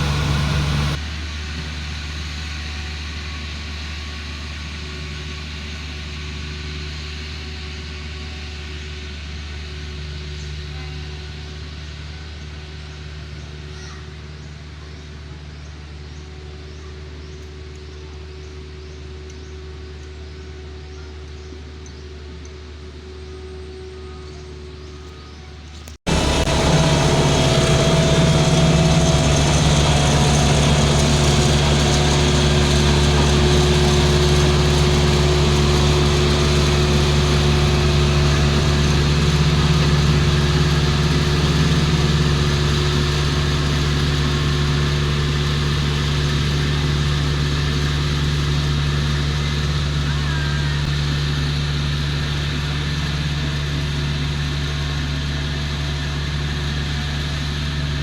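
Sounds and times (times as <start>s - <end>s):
diesel engine idling: 0.0s - 1.0s, 26.1s - 58.0s.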